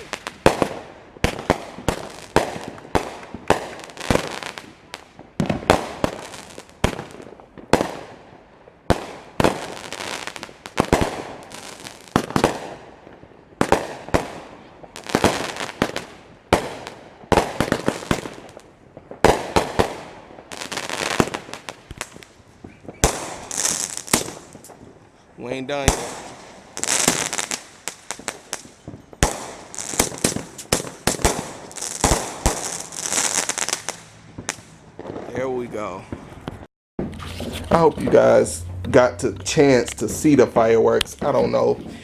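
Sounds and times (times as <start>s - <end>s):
firework bangs with crackle: 0.0s - 38.4s.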